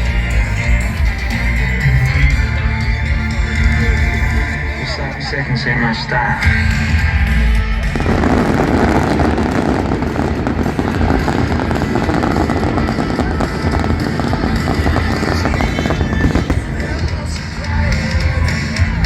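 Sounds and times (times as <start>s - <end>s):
loud rock music: 0.0s - 19.0s
fireworks bursting and crackling: 6.7s - 19.0s.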